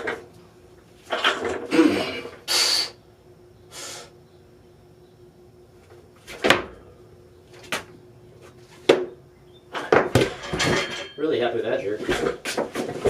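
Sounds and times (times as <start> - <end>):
short bursts of hissing: 2.5 - 3.0
barbell dropping on platform: 9.8 - 11.2.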